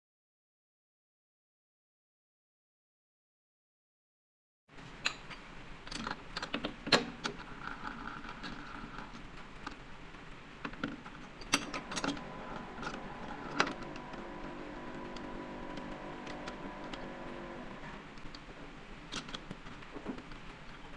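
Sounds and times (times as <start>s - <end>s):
steady machine hum: 11.4s - 20.9s.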